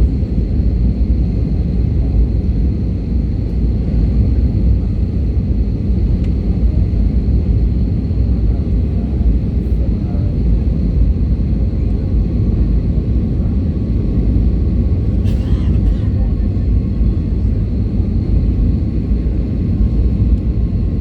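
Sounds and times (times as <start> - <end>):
jet engines rumbling: 0.0 - 21.0.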